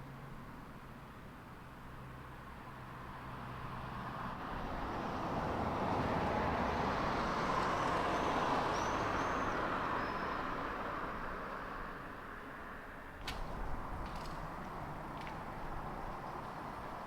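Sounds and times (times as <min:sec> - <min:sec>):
road vehicle passing by: 0:02.9 - 0:12.2, 0:13.2 - 0:17.0.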